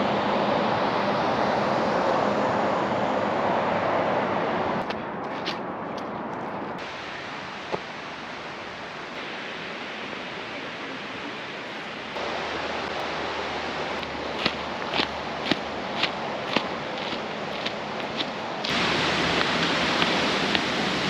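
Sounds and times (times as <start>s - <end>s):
falling water rushing: 6.8s - 21.0s
footsteps: 13.9s - 20.8s.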